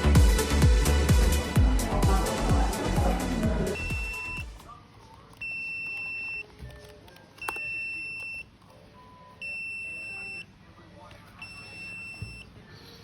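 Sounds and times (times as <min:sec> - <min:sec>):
electronic buzzer beeping: 0:03.8 - 0:04.5.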